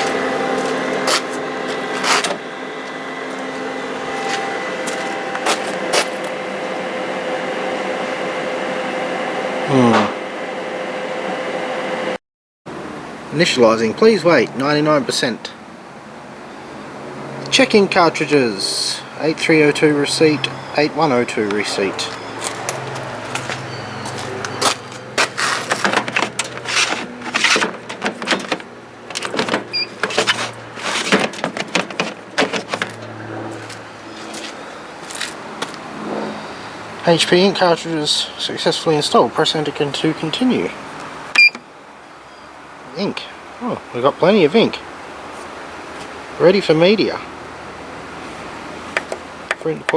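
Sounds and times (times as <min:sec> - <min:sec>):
whir gliding down in pitch: 0:00.0 - 0:12.2
plotter fan whoosh with hum: 0:00.0 - 0:43.4.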